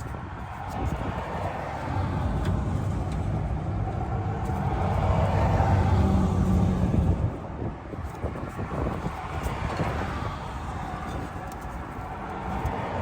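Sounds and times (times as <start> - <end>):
vehicle passing by: 1.6 - 7.3.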